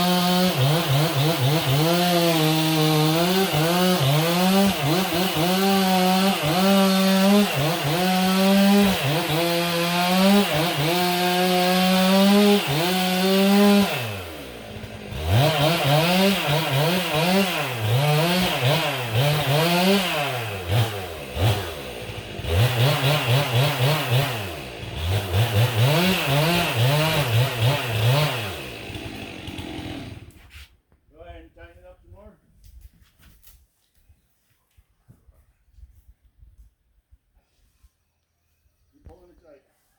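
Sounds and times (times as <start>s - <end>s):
chainsaw revving: 0.0s - 30.4s
chainsaw cutting wood: 0.0s - 30.6s.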